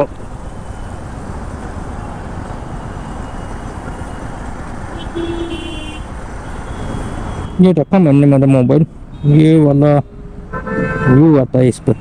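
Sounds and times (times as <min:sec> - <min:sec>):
vehicle horn: 0:05.0 - 0:07.6, 0:10.5 - 0:11.3.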